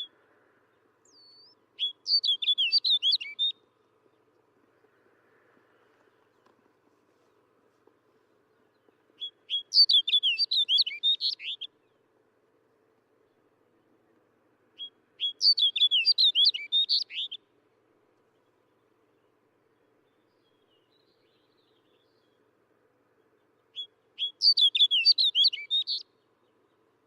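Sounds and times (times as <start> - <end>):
snow bunting singing: 0.0 - 12.4, 13.1 - 27.0.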